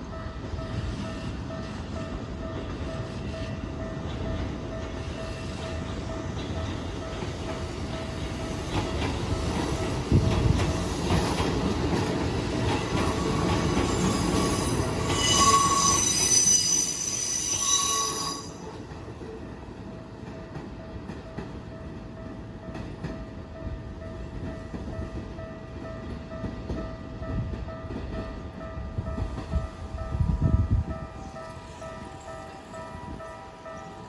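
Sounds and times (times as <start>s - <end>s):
electric train passing: 0.0s - 34.0s
train wheels squealing: 12.7s - 18.9s.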